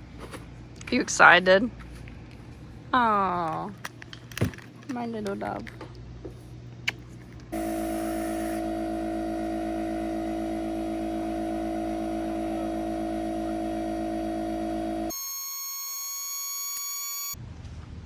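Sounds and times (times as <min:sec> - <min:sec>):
air compressor whining: 0:07.5 - 0:17.4
high steady whine: 0:07.6 - 0:17.4.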